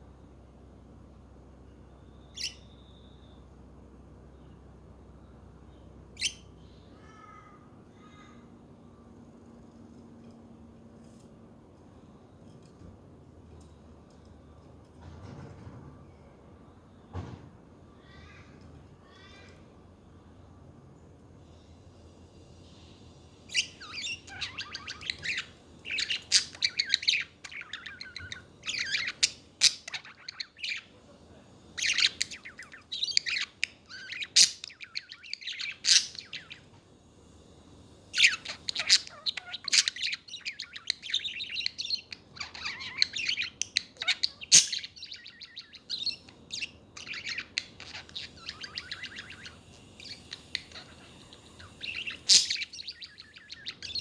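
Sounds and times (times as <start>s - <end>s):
budgerigars warbling and chirping: 2.0s - 3.4s, 5.7s - 6.9s, 23.3s - 36.8s, 37.4s - 54.0s.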